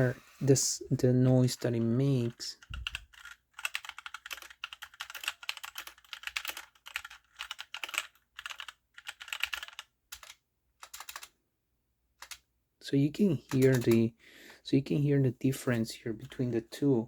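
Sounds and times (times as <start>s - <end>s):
computer keyboard typing: 1.3s - 11.3s, 12.2s - 12.5s, 13.4s - 14.0s.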